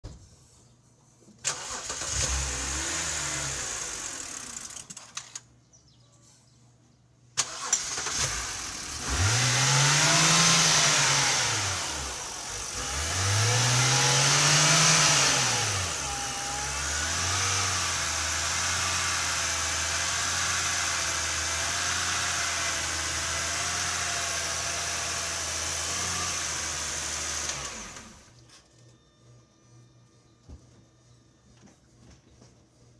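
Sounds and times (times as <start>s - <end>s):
car engine starting and revving: 1.5s - 4.8s, 7.4s - 28.3s.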